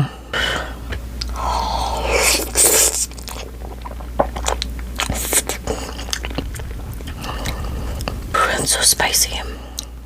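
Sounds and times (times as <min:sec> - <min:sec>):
chewing with wet clicks: 0:03.1 - 0:06.7.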